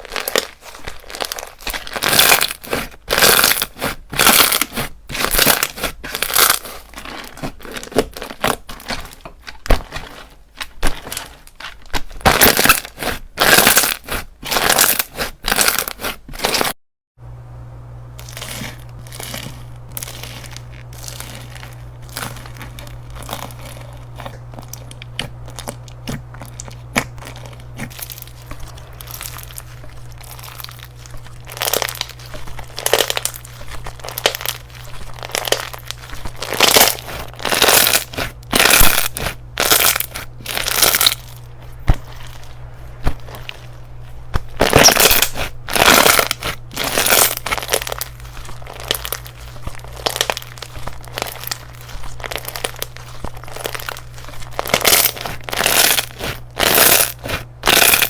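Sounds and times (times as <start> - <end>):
steady low hum: 17.2 - 58.0.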